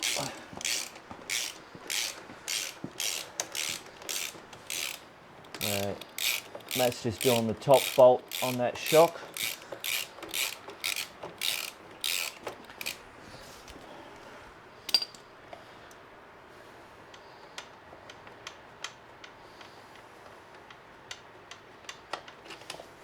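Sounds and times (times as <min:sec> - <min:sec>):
hand ratchet clicking: 0:00.0 - 0:13.0.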